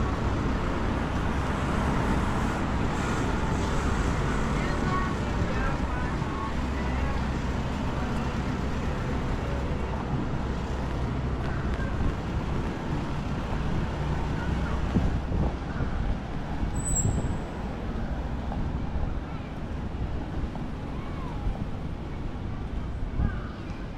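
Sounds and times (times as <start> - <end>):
road traffic rumble: 0.0 - 23.9.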